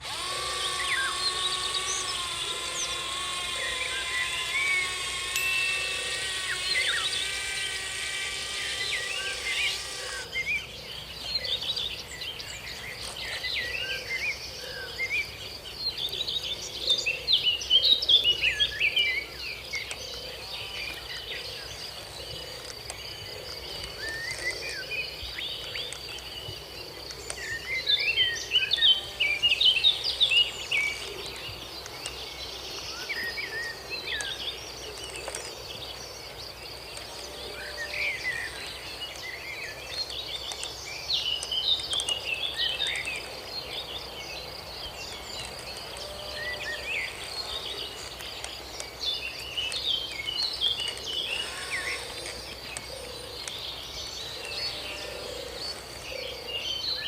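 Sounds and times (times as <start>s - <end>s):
small electric motor whining: 0.0s - 10.7s, 19.8s - 43.4s, 50.8s - 52.9s
high insect buzz: 0.0s - 10.8s, 20.4s - 32.1s, 32.8s - 52.8s
birds chirping: 0.0s - 57.0s.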